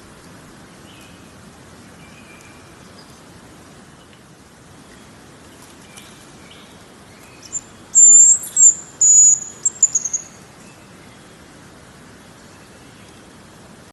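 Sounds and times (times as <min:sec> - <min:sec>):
faint steady hiss: 0:00.0 - 0:13.9
bird whistling high thin notes: 0:07.5 - 0:10.3.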